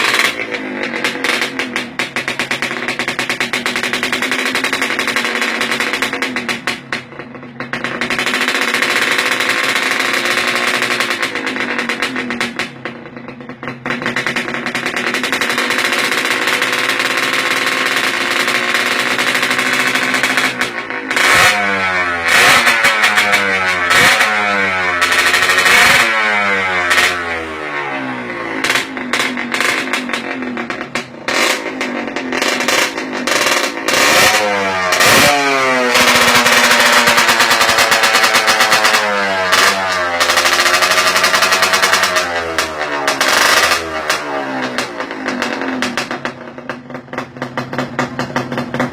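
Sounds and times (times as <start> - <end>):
motorcycle engine revving: 0.0 - 48.9.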